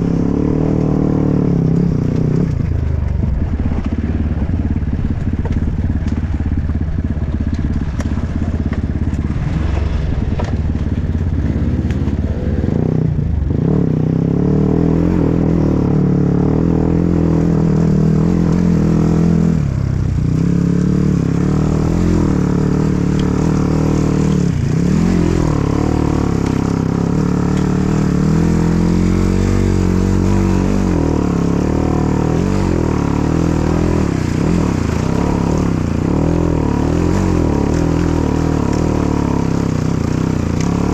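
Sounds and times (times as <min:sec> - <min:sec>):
dirt bike engine revving: 0:00.0 - 0:40.9.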